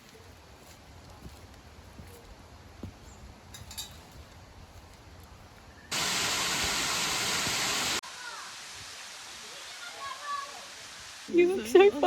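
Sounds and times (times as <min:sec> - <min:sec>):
outdoor background noise: 0:00.0 - 0:12.0
waterfall rushing: 0:05.9 - 0:12.0.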